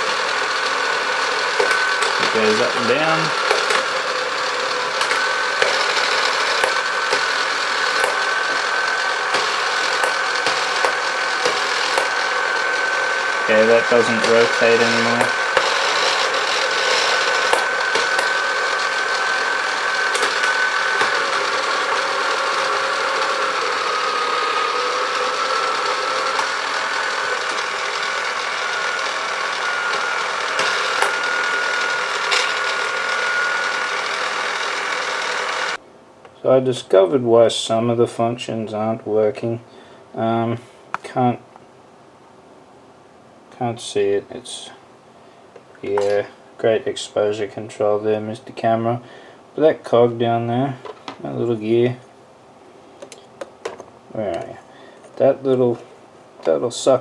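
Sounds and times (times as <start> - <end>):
gear clicks: 0.0 - 35.8
toy robot arm motor whirring: 0.0 - 35.8
sharp gearbox clicks: 1.6 - 4.0, 4.6 - 8.7, 20.1 - 22.1.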